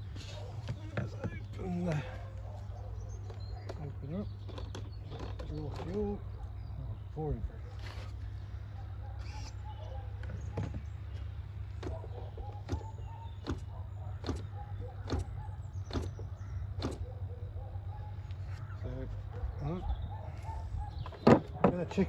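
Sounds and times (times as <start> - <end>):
propeller flicked by hand clicking: 3.2 - 6.4, 11.6 - 17.0.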